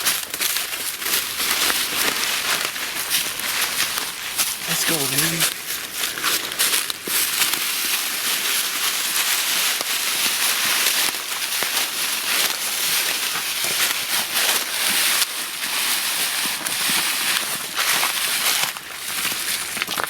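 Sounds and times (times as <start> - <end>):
dry leaves rustling and crunching: 0.0 - 20.0.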